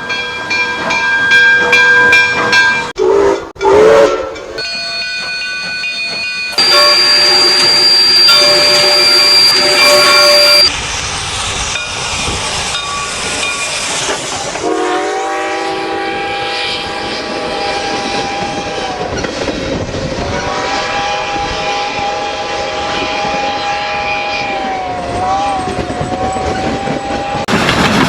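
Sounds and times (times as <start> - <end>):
train rumble and wheel clatter: 0.0 - 2.9, 4.4 - 28.0
steam whistle: 3.0 - 4.5, 6.5 - 10.7, 14.6 - 19.1
locomotive air horn blasts: 6.6 - 10.7, 14.6 - 16.8.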